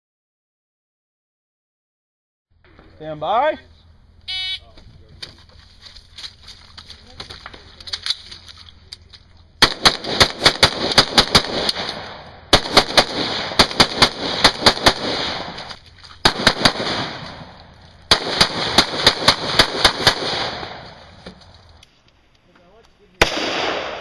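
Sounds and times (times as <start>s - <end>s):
rifle firing rapid shots: 9.6s - 21.2s, 23.2s - 24.0s.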